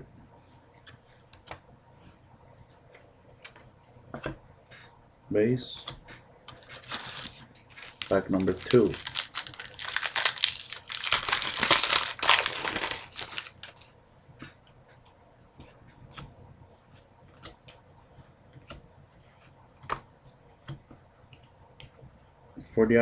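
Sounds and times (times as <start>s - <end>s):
wrapper tearing and crumpling: 6.7s - 13.8s.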